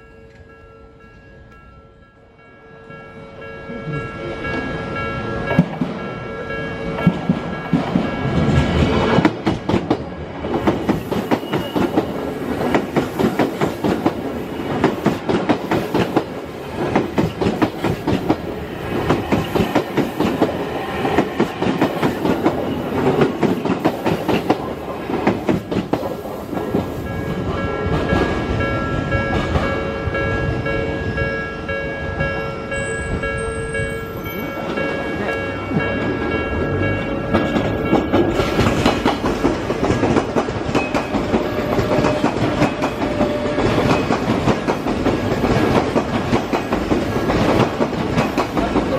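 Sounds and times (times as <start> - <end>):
crossing warning bell ringing: 0.0 - 25.7, 26.6 - 48.9
train wheels clacking over joints: 7.0 - 28.5, 35.7 - 48.9.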